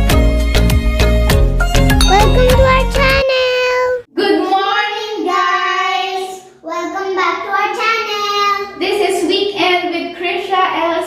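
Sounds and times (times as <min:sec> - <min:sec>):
child singing unaccompanied: 0:02.0 - 0:04.1.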